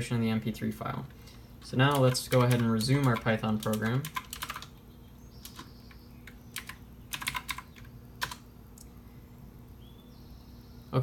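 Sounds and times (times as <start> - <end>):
computer keyboard typing: 1.6 - 4.8, 5.4 - 8.5.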